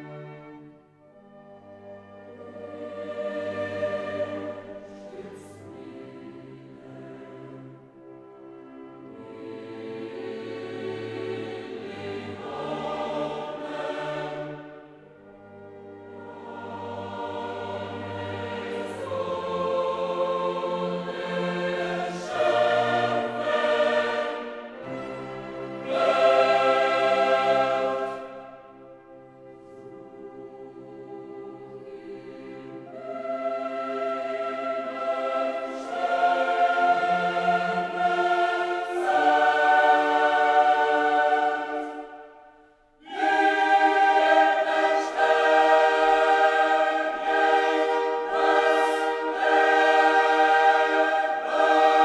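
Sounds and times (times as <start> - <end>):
choir singing held chords: 0.0 - 52.0.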